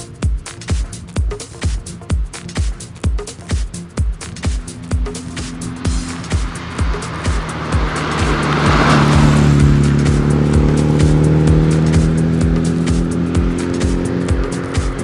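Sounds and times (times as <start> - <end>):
electronic music: 0.0 - 15.0
kick drum beat: 0.0 - 15.0
rush of noise: 3.8 - 15.0.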